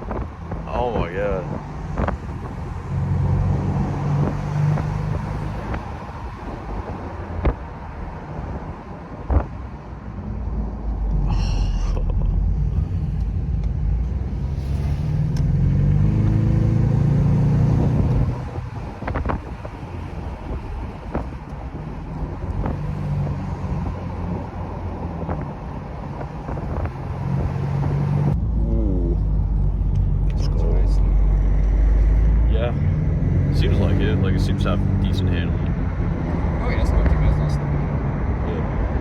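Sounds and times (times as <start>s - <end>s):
car engine accelerating: 0.0s - 39.0s.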